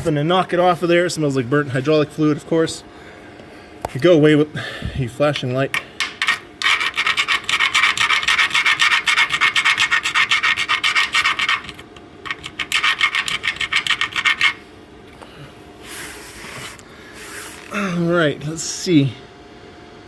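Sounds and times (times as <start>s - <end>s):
metal rasping on metal: 6.2s - 14.6s.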